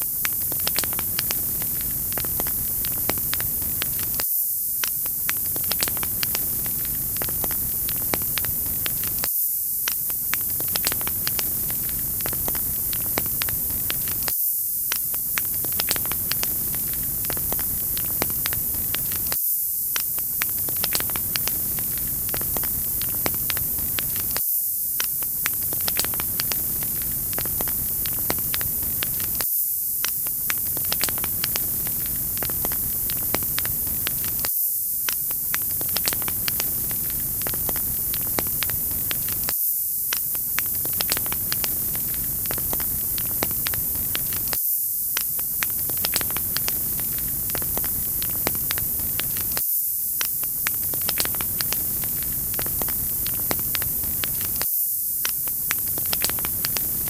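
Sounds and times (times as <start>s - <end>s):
wood fire crackling: 0.1s - 4.2s, 4.8s - 14.3s, 14.9s - 24.4s, 25.0s - 29.4s, 30.0s - 39.5s, 40.1s - 49.6s, 50.2s - 54.6s, 55.3s - 57.0s.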